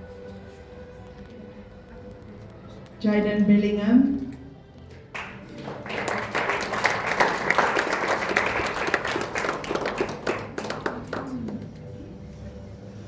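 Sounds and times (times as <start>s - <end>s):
audience applauding: 5.1s - 11.8s.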